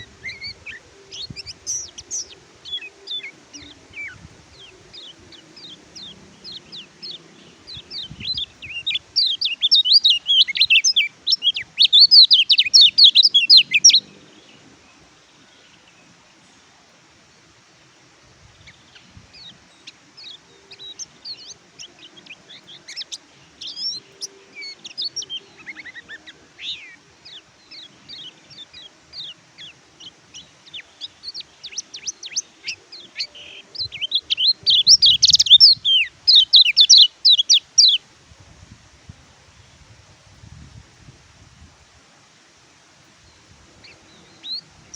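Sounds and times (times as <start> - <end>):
bird chirping and trilling: 0.0 - 14.0, 19.0 - 38.0.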